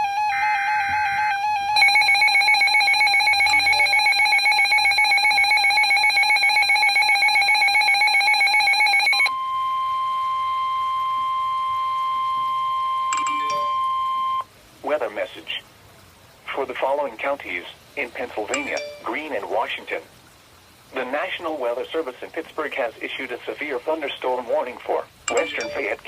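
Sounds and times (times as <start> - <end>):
steady high alarm tone: 1.4 - 14.5, 25.3 - 26.0.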